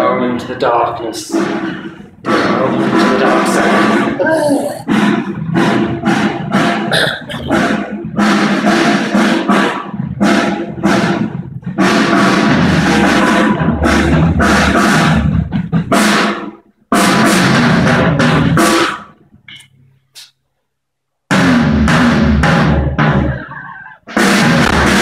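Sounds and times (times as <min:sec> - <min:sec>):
loud drum-driven music: 0:00.0 - 0:19.2, 0:21.3 - 0:25.0
drum hits and cymbals: 0:00.0 - 0:20.3, 0:21.3 - 0:25.0.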